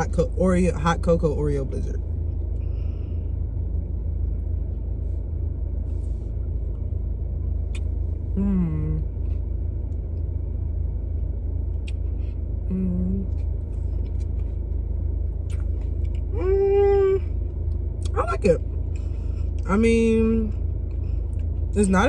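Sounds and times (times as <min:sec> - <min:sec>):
car idling from inside cabin: 0:00.0 - 0:22.0
woman humming: 0:08.4 - 0:09.1, 0:12.7 - 0:13.3, 0:16.3 - 0:17.3.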